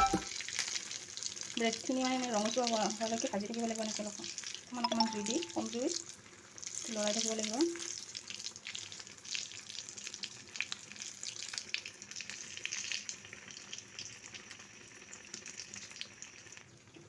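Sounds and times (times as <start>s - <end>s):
food deep-frying in hot oil: 0.0s - 17.0s.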